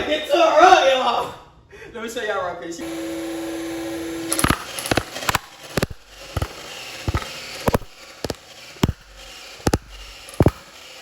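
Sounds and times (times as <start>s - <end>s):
toy blaster firing pops: 4.3s - 11.0s.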